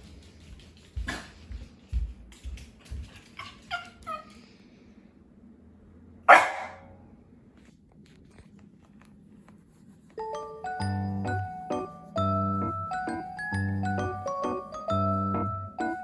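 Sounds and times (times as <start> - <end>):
dog barking loudly: 6.3 - 6.9.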